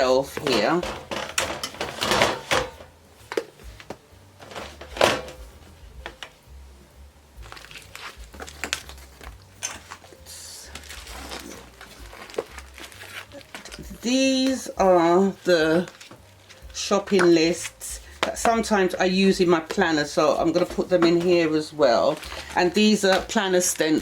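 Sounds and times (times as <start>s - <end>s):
objects knocking and rustling: 0.0s - 6.4s, 7.4s - 23.5s.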